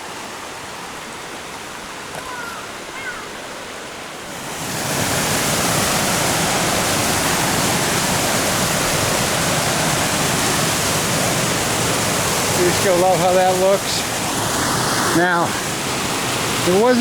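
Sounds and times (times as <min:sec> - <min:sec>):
small waterfall rushing: 0:00.0 - 0:17.0.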